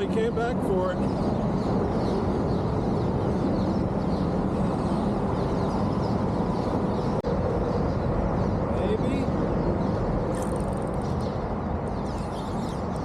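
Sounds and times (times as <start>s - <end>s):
steady rushing noise: 0.0s - 13.0s.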